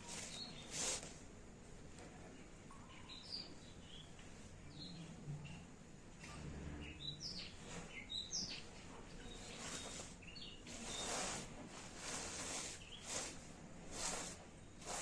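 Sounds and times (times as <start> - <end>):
small birds chirping: 0.0 - 1.1, 2.3 - 5.8, 6.7 - 15.0.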